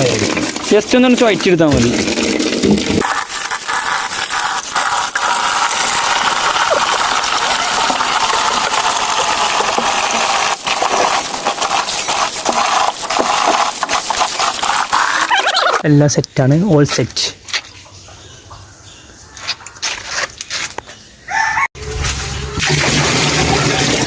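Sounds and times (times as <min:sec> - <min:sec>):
water running and splashing: 0:00.0 - 0:15.8, 0:22.6 - 0:24.0.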